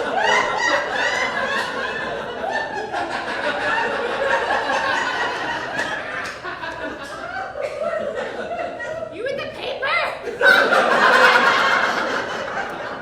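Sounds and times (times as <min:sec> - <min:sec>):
people laughing: 0:00.0 - 0:13.0
voices: 0:07.0 - 0:13.0.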